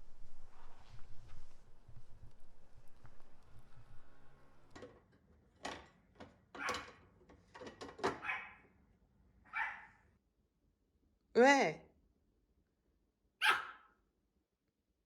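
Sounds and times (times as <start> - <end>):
small dog barking: 6.6 - 6.9, 8.1 - 8.6, 9.5 - 10.0, 13.4 - 14.0.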